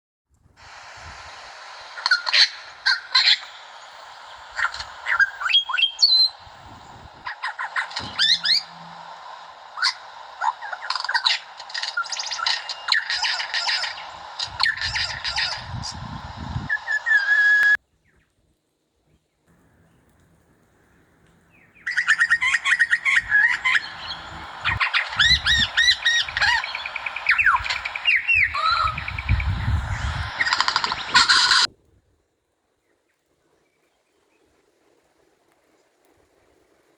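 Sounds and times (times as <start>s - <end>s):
low rumbling: 0.6s - 17.2s, 19.5s - 31.7s
lyrebird singing: 1.0s - 17.8s, 19.5s - 31.7s.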